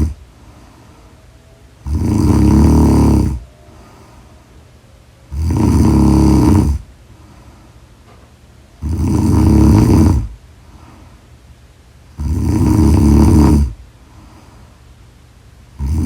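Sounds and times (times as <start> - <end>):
person snoring: 1.8 - 4.3, 5.3 - 6.9, 8.8 - 10.4, 12.2 - 13.8, 15.8 - 16.0.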